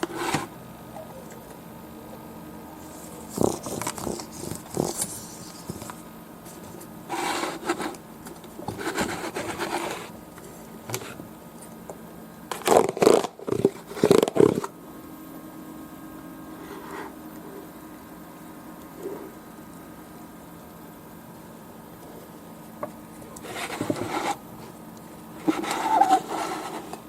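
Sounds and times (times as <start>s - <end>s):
objects scraping and rubbing: 0.0s - 0.5s, 2.9s - 8.0s, 8.7s - 10.2s, 23.4s - 24.4s, 25.4s - 27.0s
sharp knocks and scrapes: 23.4s - 24.4s, 25.4s - 27.0s.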